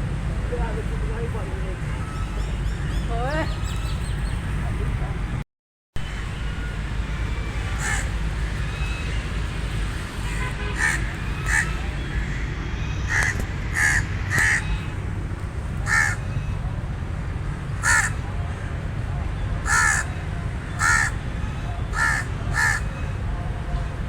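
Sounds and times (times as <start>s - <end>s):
raven cawing: 7.8s - 8.2s, 10.8s - 12.4s, 13.1s - 14.7s, 15.8s - 16.3s, 17.8s - 18.2s, 19.6s - 20.1s, 20.8s - 21.2s, 21.9s - 22.9s.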